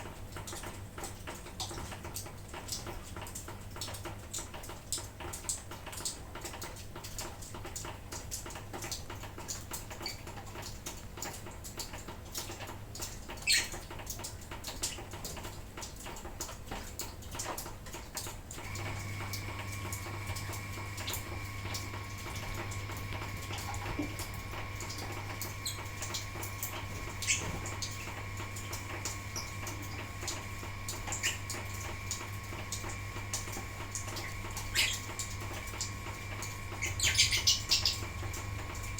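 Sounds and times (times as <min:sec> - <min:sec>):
faint steady hum: 0:00.0 - 0:38.9
light drizzle patter: 0:00.0 - 0:38.9
lovebirds squeaking and chirping: 0:13.4 - 0:13.8, 0:27.2 - 0:28.1, 0:34.7 - 0:35.1, 0:36.8 - 0:38.1.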